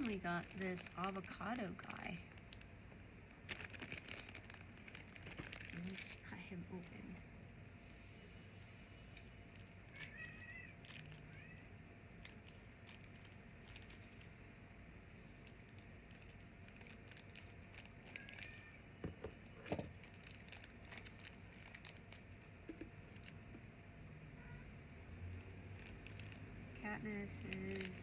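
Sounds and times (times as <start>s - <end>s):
cat meowing high-pitched: 9.9s - 11.7s, 18.1s - 18.8s.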